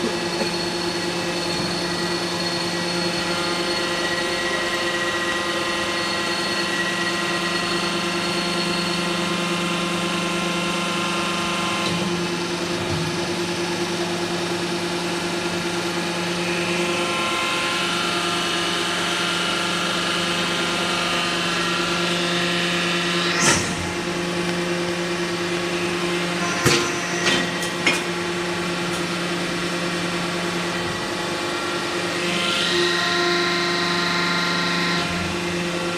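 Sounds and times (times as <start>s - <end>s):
sharp machine knocks: 26.6s - 28.0s.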